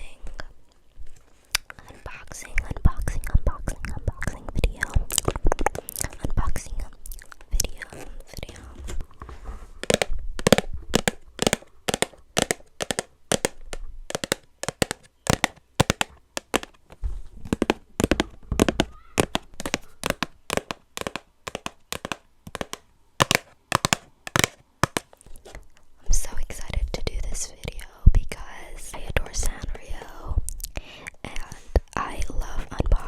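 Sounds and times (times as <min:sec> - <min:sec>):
fingernails tapping on packaging: 0:09.8 - 0:25.2.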